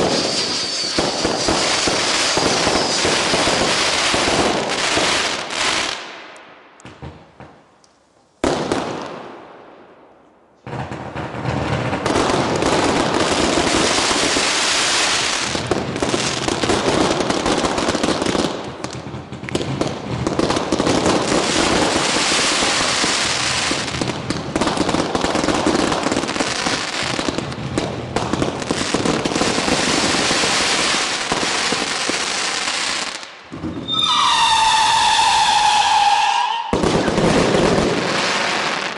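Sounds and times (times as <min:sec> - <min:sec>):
firework whistling howl: 0:00.0 - 0:04.0, 0:33.6 - 0:38.8
fireworks bangs and crackle: 0:00.0 - 0:07.8, 0:08.4 - 0:38.9.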